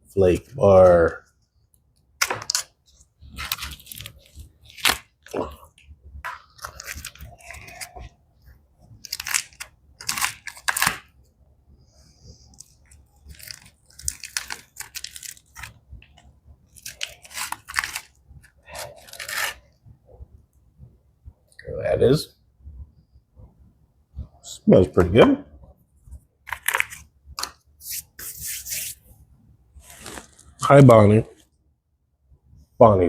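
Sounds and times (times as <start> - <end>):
food wrapper tearing and crinkling: 2.2 - 5.4, 6.3 - 8.1, 9.0 - 11.1, 12.5 - 19.7, 26.4 - 27.6.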